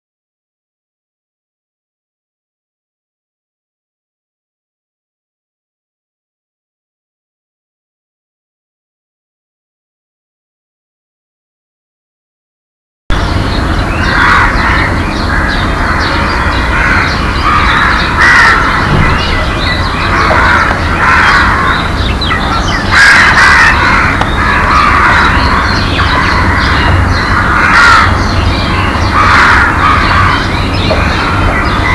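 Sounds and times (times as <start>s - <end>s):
low rumble: 13.1s - 31.6s
crows cawing: 13.2s - 31.9s
small birds chirping: 13.2s - 31.9s.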